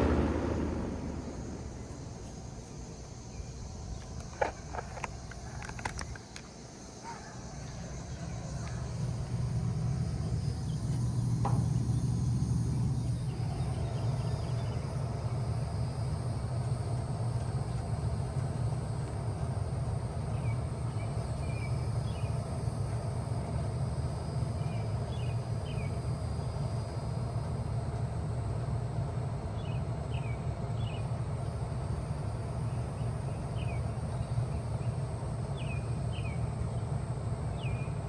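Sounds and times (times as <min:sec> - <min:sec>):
crickets chirping: 0:00.0 - 0:38.0
heat pump low hum: 0:00.0 - 0:38.0
heat pump clicks: 0:10.3 - 0:13.7.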